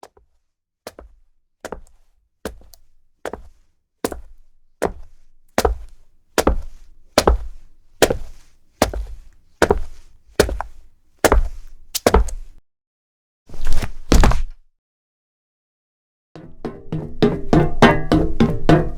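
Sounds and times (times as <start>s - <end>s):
footsteps on hard surface: 0.9s - 12.6s.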